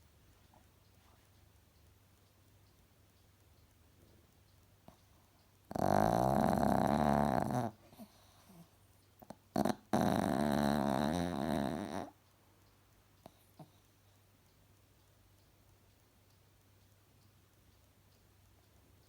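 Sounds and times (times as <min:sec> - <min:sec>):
dog snoring: 0:05.7 - 0:12.2.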